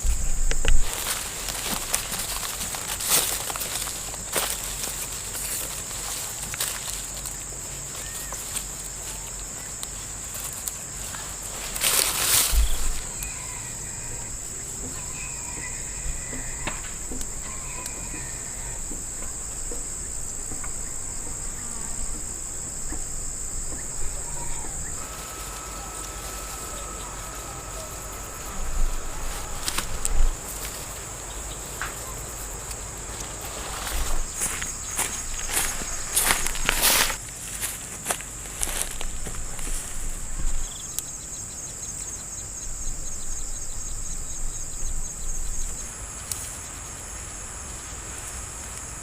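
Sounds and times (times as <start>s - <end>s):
handling noise rustle: 0.0s - 13.6s, 23.0s - 40.9s
insects droning: 0.0s - 49.0s.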